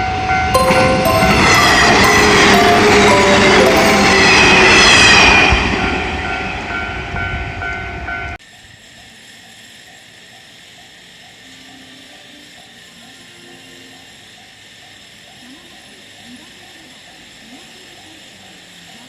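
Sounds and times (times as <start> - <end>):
electric train rumbling past: 0.0 - 9.3
level crossing bell ringing: 0.6 - 7.2.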